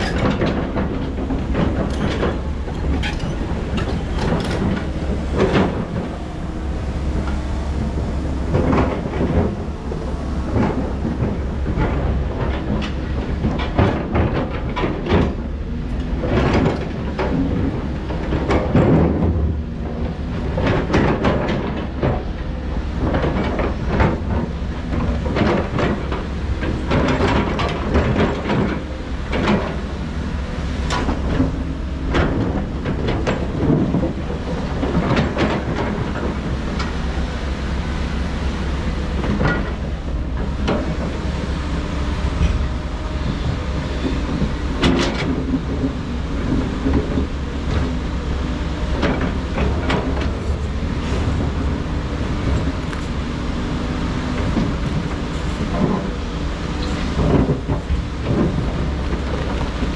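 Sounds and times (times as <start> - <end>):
metallic clanks and knocks: 0.0 - 15.4
diesel machinery engine running: 0.0 - 59.9.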